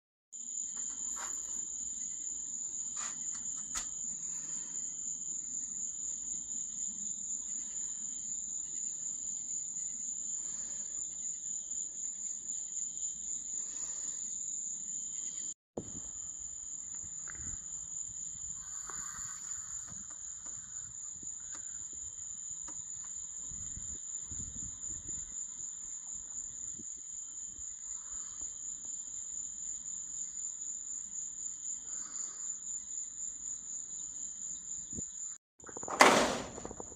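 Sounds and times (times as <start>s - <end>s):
cricket trilling: 0.4s - 35.9s.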